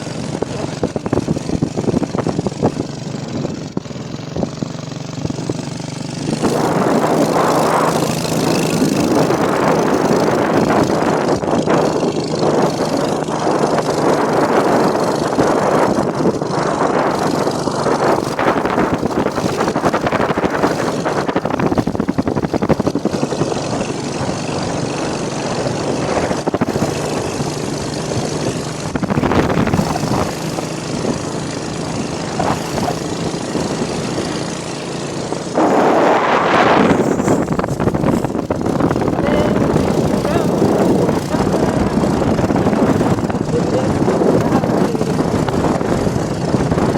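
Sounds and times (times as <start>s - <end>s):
engine hum: 0.0s - 46.9s
rushing wind and road noise: 0.0s - 46.9s.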